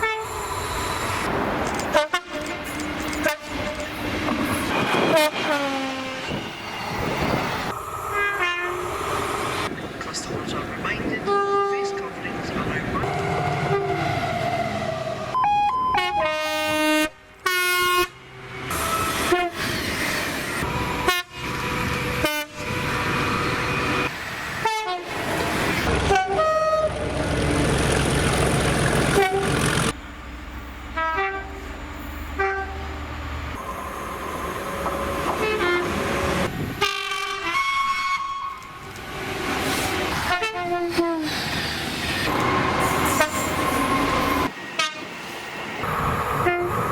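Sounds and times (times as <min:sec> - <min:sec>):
train low rumble: 0:00.0 - 0:46.9
train horn blasts: 0:01.9 - 0:02.6, 0:05.1 - 0:06.1, 0:08.1 - 0:08.9, 0:13.1 - 0:14.2, 0:15.4 - 0:18.2, 0:19.2 - 0:19.6, 0:20.6 - 0:21.4, 0:22.2 - 0:22.8, 0:24.6 - 0:25.1, 0:26.1 - 0:26.9, 0:29.2 - 0:29.6, 0:31.0 - 0:31.6, 0:32.4 - 0:32.9, 0:35.3 - 0:36.1, 0:36.8 - 0:38.7, 0:40.3 - 0:41.2, 0:43.1 - 0:43.5, 0:44.8 - 0:45.0, 0:46.4 - 0:46.9.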